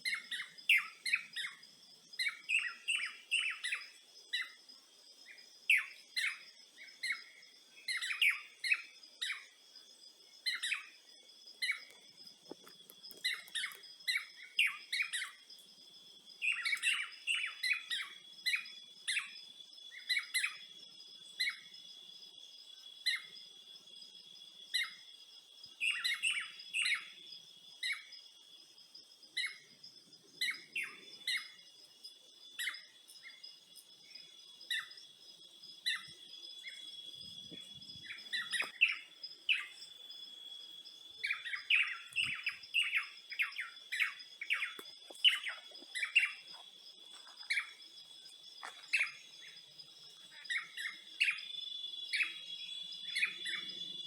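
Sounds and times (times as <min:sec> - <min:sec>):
high-pitched insect drone: 0:25.9 - 0:54.0
birds chirping: 0:35.6 - 0:40.2, 0:40.8 - 0:54.0.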